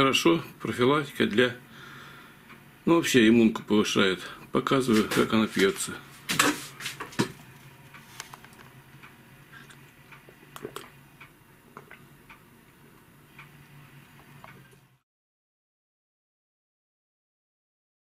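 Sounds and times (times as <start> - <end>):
low steady hum: 0.0 - 15.0
person swallowing: 9.5 - 11.0, 11.7 - 12.1.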